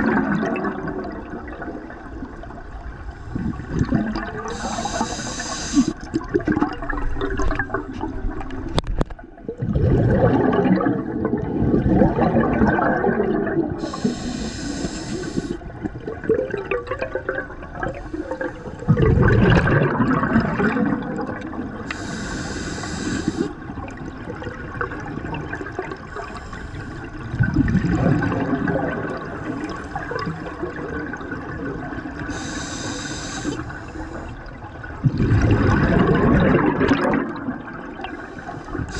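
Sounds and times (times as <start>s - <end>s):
exhaled bubbles rumbling: 0.0s - 38.9s
regulator inhalation hiss: 4.4s - 6.0s, 13.8s - 15.6s, 18.0s - 18.9s, 21.9s - 23.6s, 26.1s - 27.1s, 32.3s - 34.3s, 38.1s - 38.9s.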